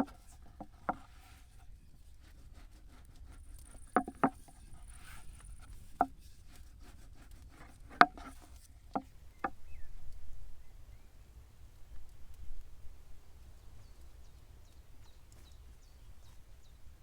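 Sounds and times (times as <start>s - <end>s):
wooden tools knocking on wood: 0.0s - 1.1s, 3.7s - 4.6s, 5.8s - 6.1s, 7.9s - 9.6s.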